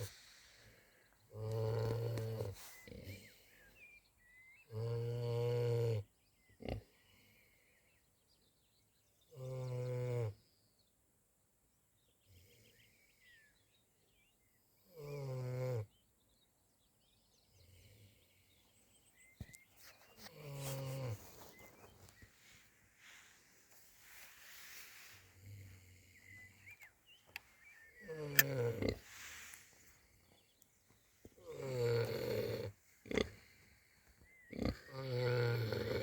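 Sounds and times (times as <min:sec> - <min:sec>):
animal snoring: 0:01.3 - 0:03.3, 0:04.7 - 0:07.0, 0:14.9 - 0:15.9, 0:20.2 - 0:21.6, 0:28.0 - 0:29.7, 0:31.4 - 0:36.0.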